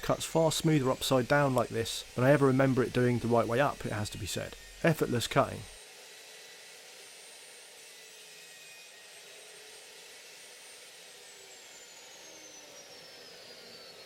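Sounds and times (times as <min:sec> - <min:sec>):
circular saw whirring: 0:00.0 - 0:14.0.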